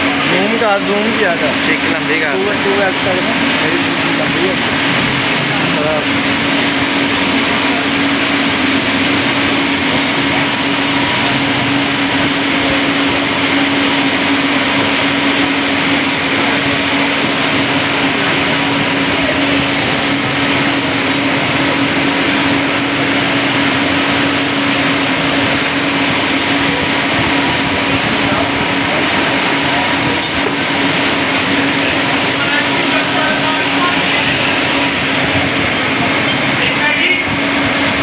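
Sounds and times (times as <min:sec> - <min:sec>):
machine whirring: 0:00.0 - 0:38.0.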